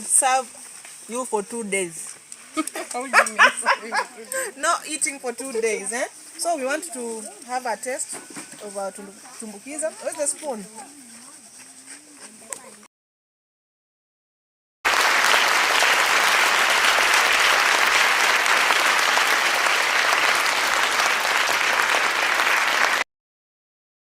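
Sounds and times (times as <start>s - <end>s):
crowd applause: 14.9s - 23.1s.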